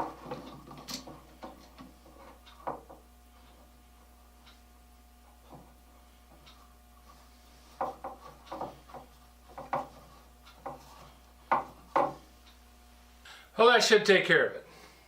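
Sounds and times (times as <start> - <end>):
wooden knocks and taps: 0.0 - 3.0, 7.8 - 12.2.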